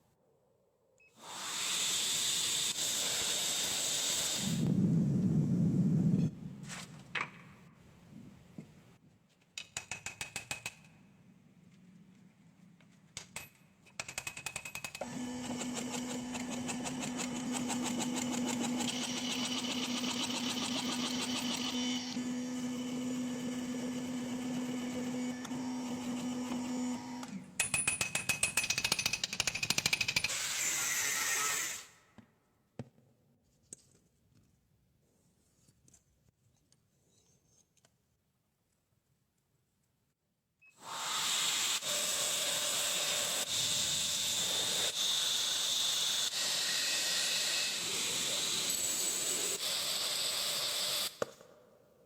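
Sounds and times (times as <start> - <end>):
power tool rapid clatter: 14.0 - 22.2, 40.8 - 51.3.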